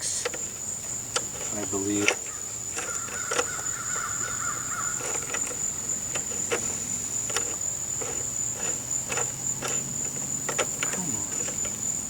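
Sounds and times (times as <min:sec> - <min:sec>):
insects droning: 0:00.0 - 0:12.0.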